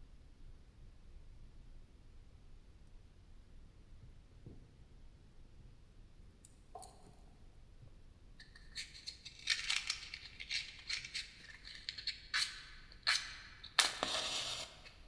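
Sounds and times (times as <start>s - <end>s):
clicks crackles and scrapes: 8.4s - 15.0s.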